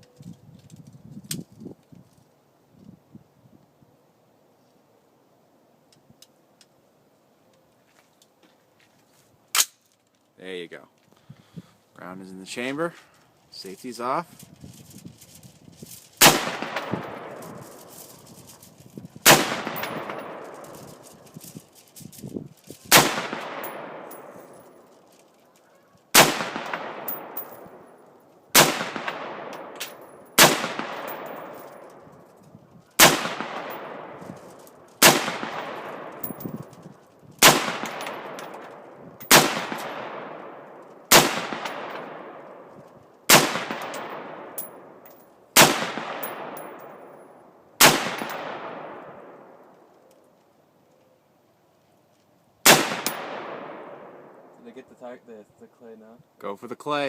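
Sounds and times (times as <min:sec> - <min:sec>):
rifle shots with echo: 0:16.2 - 0:17.8, 0:19.2 - 0:21.0, 0:22.9 - 0:24.9, 0:26.1 - 0:32.1, 0:33.0 - 0:36.4, 0:37.4 - 0:42.7, 0:43.3 - 0:45.0, 0:45.6 - 0:49.7, 0:52.6 - 0:54.5.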